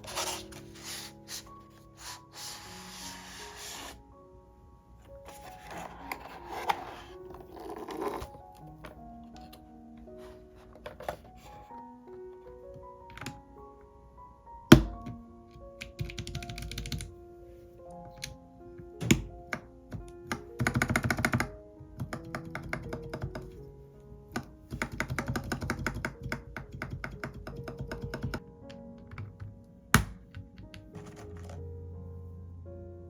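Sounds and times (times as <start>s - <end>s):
background music: 0.0s - 33.0s
mechanical keyboard typing: 15.8s - 17.1s, 20.3s - 23.5s, 24.7s - 28.4s.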